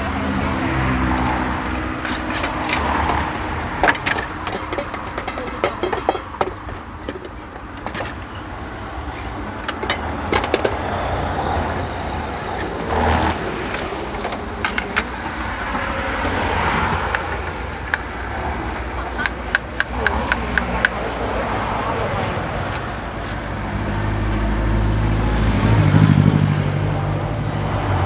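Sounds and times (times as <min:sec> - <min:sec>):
road traffic rumble: 0:00.0 - 0:28.0
sharp clicks and clinks: 0:01.2 - 0:21.2.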